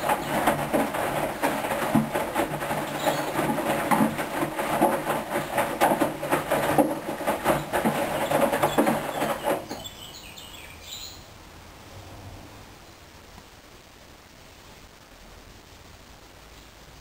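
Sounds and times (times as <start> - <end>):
washing machine drum turning: 0.0 - 9.8
water sloshing: 0.0 - 9.9
laundry tumbling knocks: 0.0 - 10.0.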